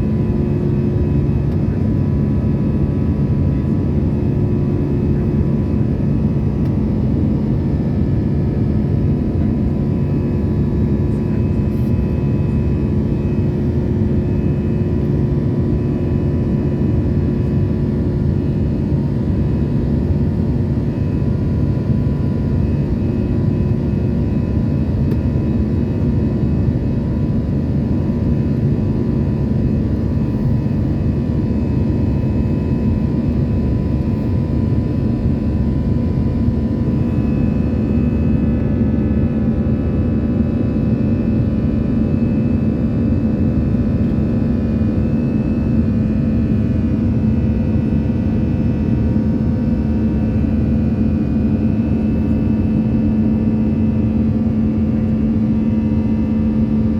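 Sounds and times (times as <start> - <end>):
jet cabin rumble: 0.0 - 47.3, 50.7 - 53.4.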